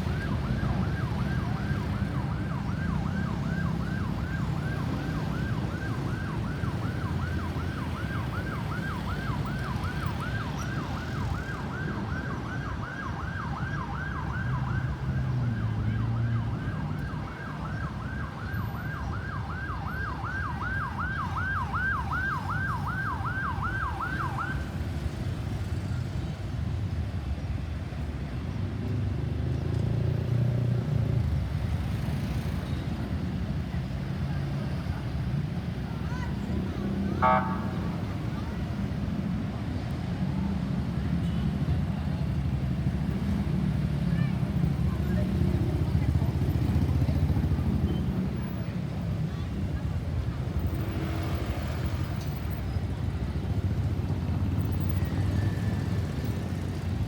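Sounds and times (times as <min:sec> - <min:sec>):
ambulance siren yelping: 0:00.0 - 0:24.8, 0:37.0 - 0:38.6
road traffic rumble: 0:00.0 - 0:57.0.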